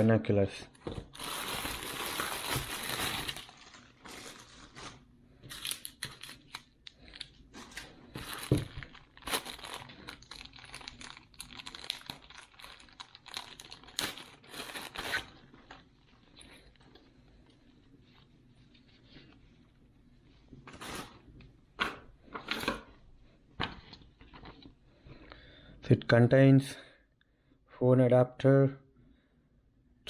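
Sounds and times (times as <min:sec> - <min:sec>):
packaging crinkling: 0:01.0 - 0:17.0.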